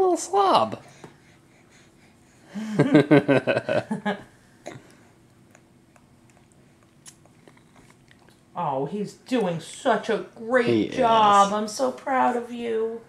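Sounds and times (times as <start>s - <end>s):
person laughing: 2.6s - 4.2s.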